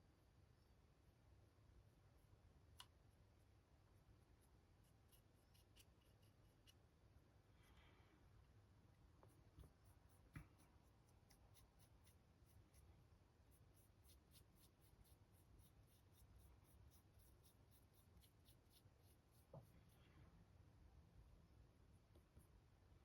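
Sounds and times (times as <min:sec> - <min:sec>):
paintbrush scratching on plastic: 0:04.0 - 0:06.8, 0:13.5 - 0:20.0.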